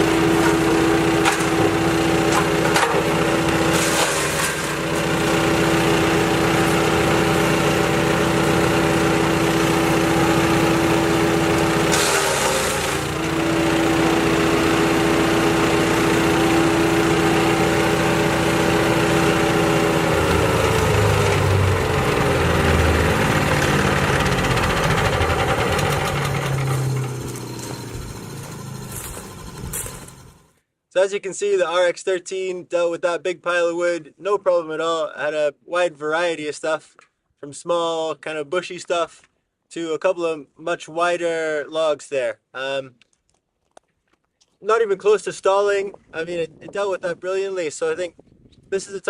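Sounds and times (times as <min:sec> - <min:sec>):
wood chipper engine running: 0:00.0 - 0:30.5.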